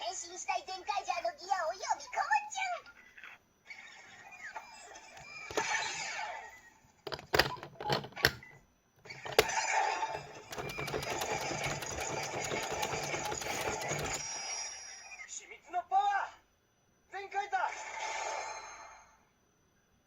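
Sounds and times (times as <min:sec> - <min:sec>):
sharp clicks: 0:07.1 - 0:14.2
whirring with rapid clicking: 0:07.1 - 0:14.4.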